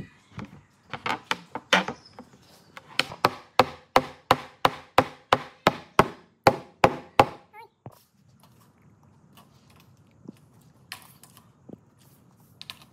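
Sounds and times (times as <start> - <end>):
hammer striking wood: 2.9 - 7.5.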